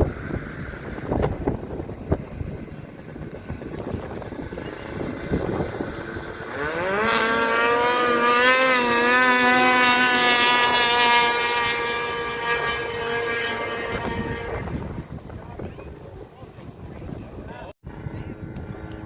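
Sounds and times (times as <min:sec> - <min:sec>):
wind on microphone: 0:00.0 - 0:19.0
racing engine revving: 0:04.4 - 0:14.8.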